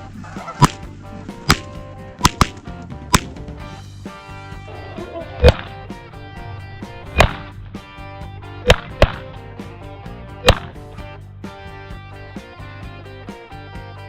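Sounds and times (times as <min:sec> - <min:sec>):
background music: 0:00.0 - 0:14.0
shotgun shots: 0:00.6 - 0:03.3, 0:05.4 - 0:05.7, 0:07.1 - 0:07.5, 0:08.6 - 0:09.4, 0:10.4 - 0:10.8.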